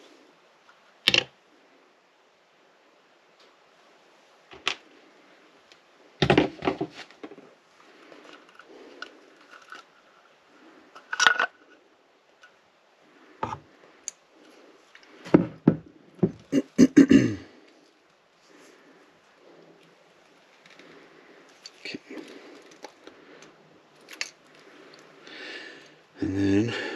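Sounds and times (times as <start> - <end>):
faint rustling: 3.4 - 16.6, 17.4 - 26.2.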